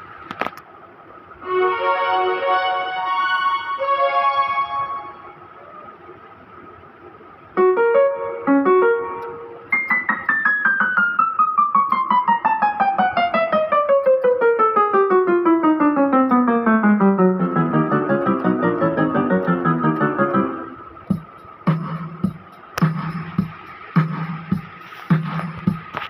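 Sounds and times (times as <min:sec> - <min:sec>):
electronic keyboard piano notes: 0:01.4 - 0:06.1, 0:07.1 - 0:26.0.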